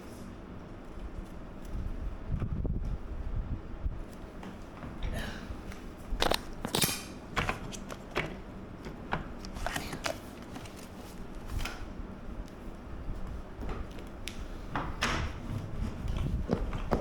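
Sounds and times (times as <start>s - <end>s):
chair parts clicking and tapping: 6.2s - 11.0s.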